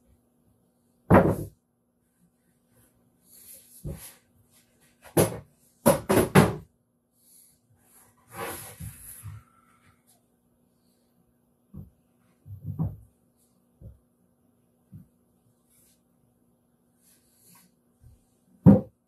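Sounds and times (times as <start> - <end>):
faint steady hum: 6.6 - 18.8.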